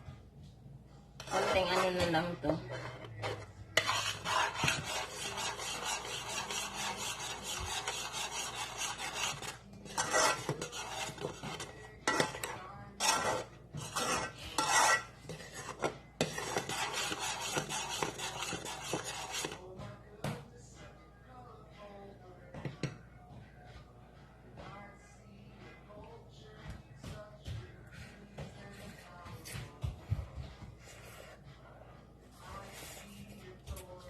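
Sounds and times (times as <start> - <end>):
utensil scraping a pan: 1.2 - 19.7.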